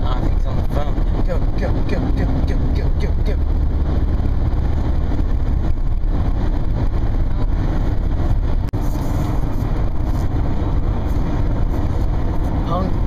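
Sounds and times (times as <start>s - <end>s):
car road rumble at highway speed: 0.0s - 13.0s.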